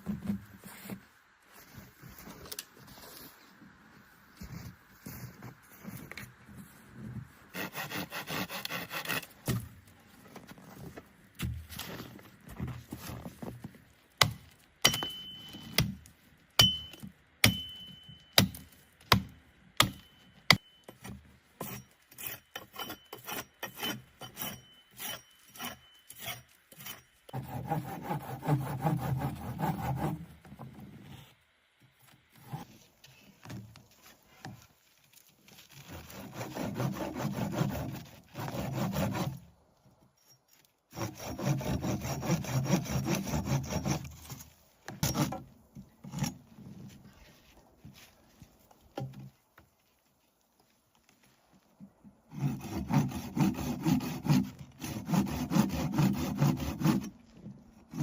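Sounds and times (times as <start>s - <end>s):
sawing wood: 7.5s - 9.7s, 18.4s - 30.3s, 35.5s - 39.5s, 40.6s - 46.3s, 52.3s - 58.0s.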